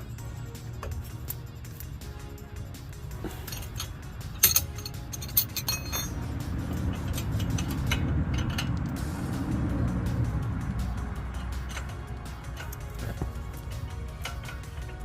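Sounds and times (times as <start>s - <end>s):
low rumble: 3.0s - 14.3s
metal clinks and taps: 3.2s - 9.0s, 11.3s - 15.0s.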